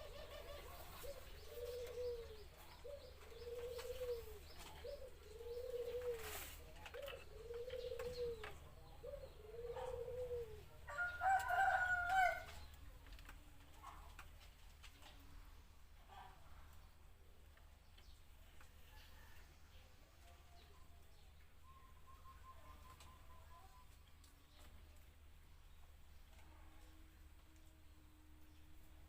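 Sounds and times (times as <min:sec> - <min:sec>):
dove cooing: 0:00.0 - 0:12.6, 0:21.6 - 0:23.9.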